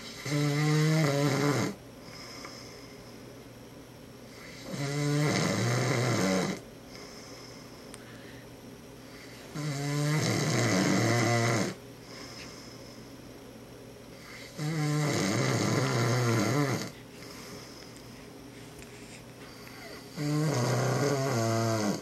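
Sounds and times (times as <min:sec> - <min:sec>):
man snoring: 0:00.1 - 0:02.3, 0:04.4 - 0:07.2, 0:09.5 - 0:11.8, 0:14.2 - 0:17.0, 0:19.7 - 0:22.0.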